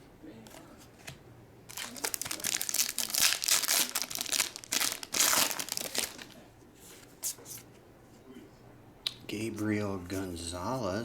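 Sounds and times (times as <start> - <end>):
foil wrapper crinkling: 1.7 - 6.4.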